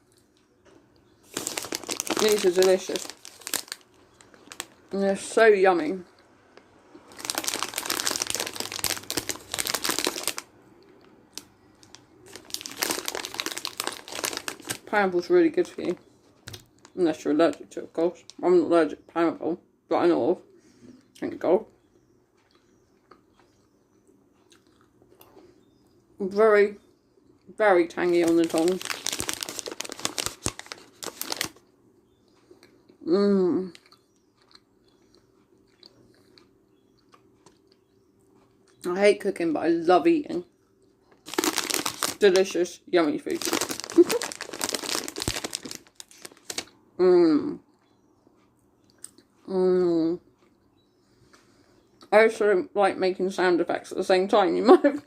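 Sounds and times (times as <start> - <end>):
crunching of chips being chewed: 1.0 - 4.9, 6.0 - 14.9, 28.1 - 32.9, 33.7 - 37.9, 41.1 - 42.5, 43.3 - 46.8.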